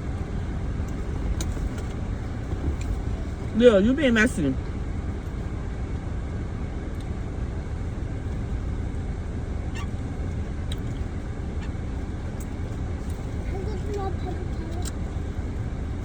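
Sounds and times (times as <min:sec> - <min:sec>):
low rumble inside car: 0:00.0 - 0:16.0.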